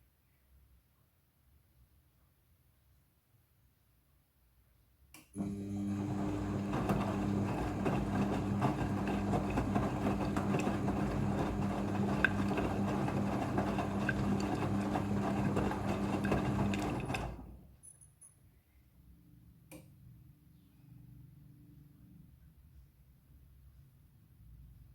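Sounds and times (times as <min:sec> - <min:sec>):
washing machine motor hum: 0:05.4 - 0:17.6
wet laundry tumbling: 0:05.9 - 0:17.4.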